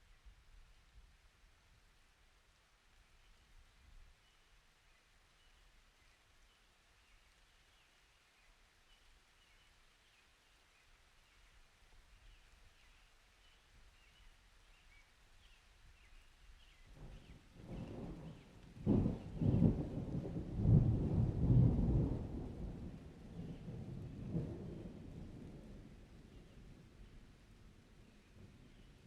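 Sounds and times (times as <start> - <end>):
thunder rumbling: 17.0 - 26.9.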